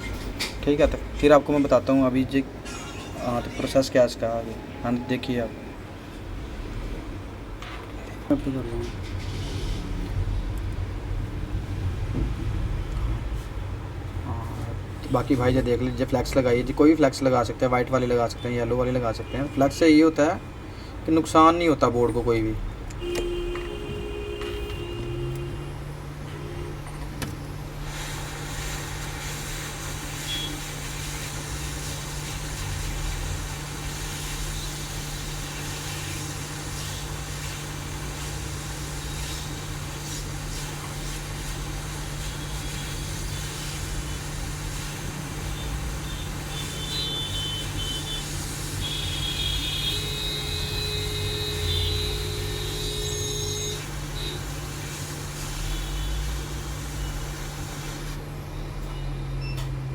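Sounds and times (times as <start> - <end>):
hot air station blowing: 27.8 - 58.3.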